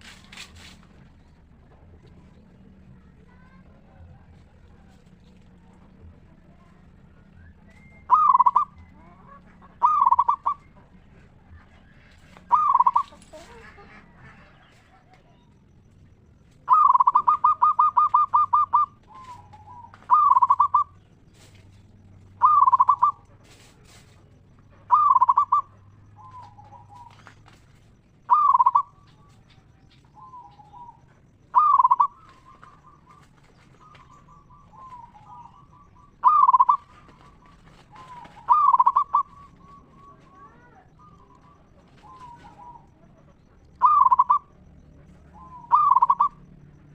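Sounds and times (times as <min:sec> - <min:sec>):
fainter lower dove coos: 0:00.0 - 0:46.9
dove cooing loudly: 0:03.2 - 0:46.9.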